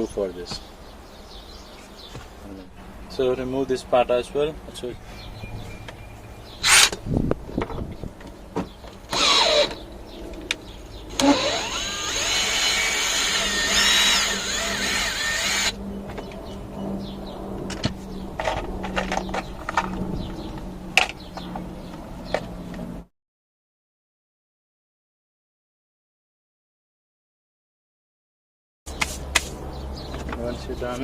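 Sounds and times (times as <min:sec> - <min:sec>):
rasping and squeaking plastic: 0:08.7 - 0:09.8, 0:11.1 - 0:15.7.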